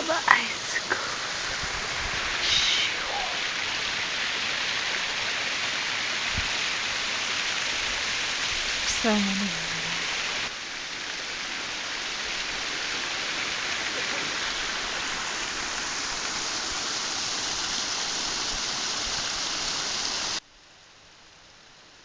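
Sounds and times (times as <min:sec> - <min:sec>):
flowing water: 0:00.0 - 0:20.4
waterfall splashing: 0:00.0 - 0:20.4.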